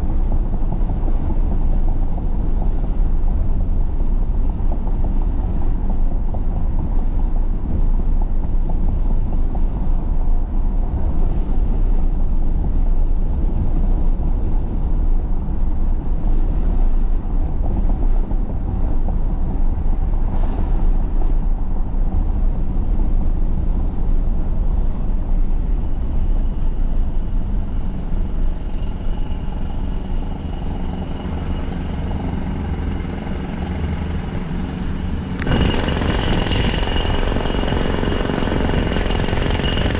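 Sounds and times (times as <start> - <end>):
vehicle and road rumble: 0.0 - 39.9
faint high whining tones: 25.3 - 39.9.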